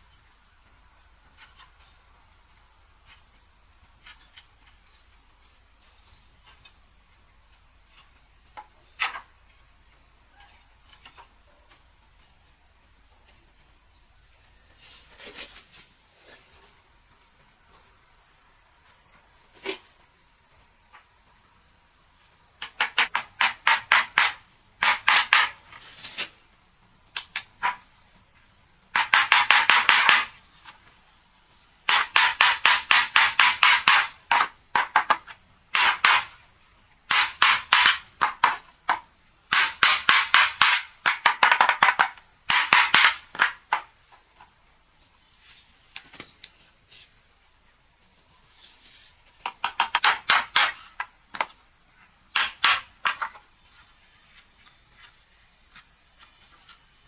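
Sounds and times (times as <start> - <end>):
high insect drone: 0.0 - 57.0
hammer blows on wood: 31.9 - 35.0, 37.1 - 38.4, 39.5 - 41.3.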